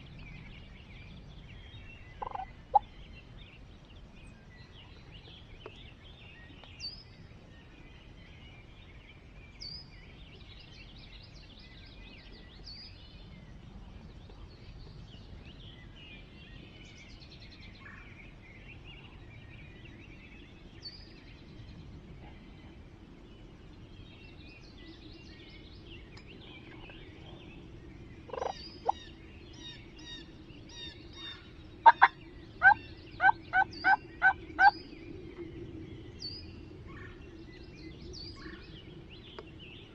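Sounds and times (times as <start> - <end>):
faint songbird chirps: 0.0 - 39.9
wild turkey calling: 2.2 - 2.8, 28.3 - 29.1, 31.2 - 34.7.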